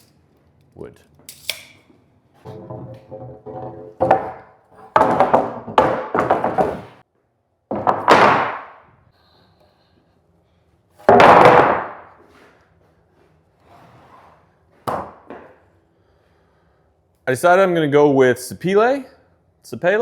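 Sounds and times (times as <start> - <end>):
wooden boards knocking and clattering: 2.4 - 7.0, 7.7 - 8.8, 11.0 - 12.1, 14.9 - 15.5.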